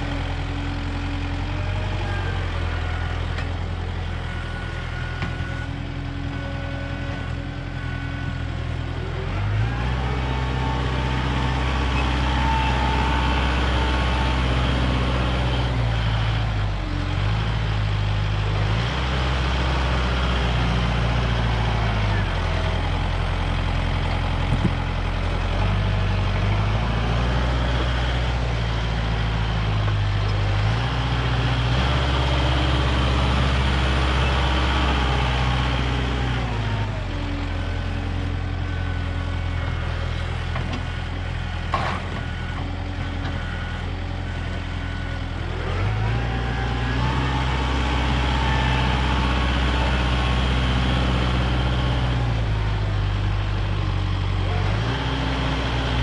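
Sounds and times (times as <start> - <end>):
diesel tractor engine running: 0.0 - 56.0.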